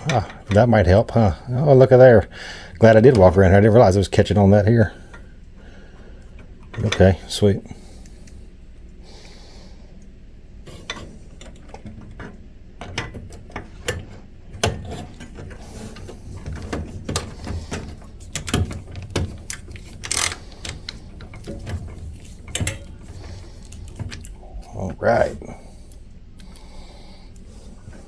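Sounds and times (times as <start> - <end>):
small parts clicking and clattering: 10.7 - 24.4.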